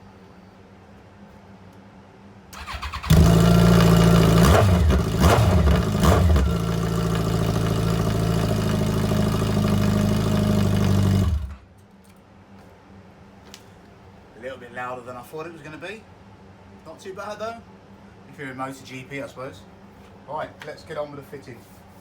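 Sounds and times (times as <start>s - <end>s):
motorcycle engine starting and revving: 2.6s - 11.7s.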